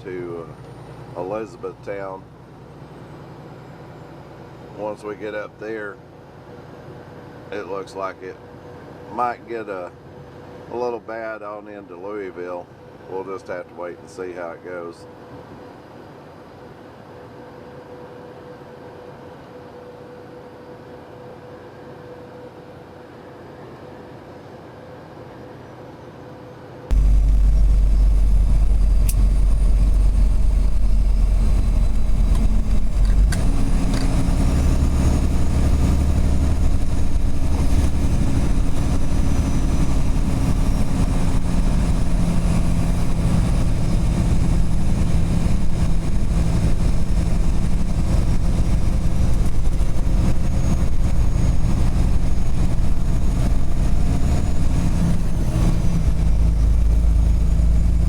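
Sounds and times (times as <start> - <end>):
truck diesel engine drone: 0.0 - 11.0, 12.1 - 58.0
road noise: 26.9 - 58.0.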